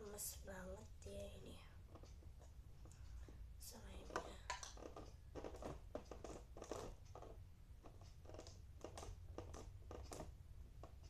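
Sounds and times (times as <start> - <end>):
slime squelching and crackling: 3.6 - 11.0.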